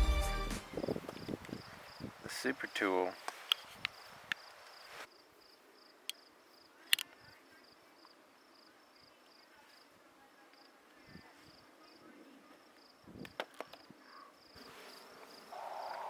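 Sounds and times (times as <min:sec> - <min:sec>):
insect chirping trill: 0:00.7 - 0:09.9, 0:12.7 - 0:16.0.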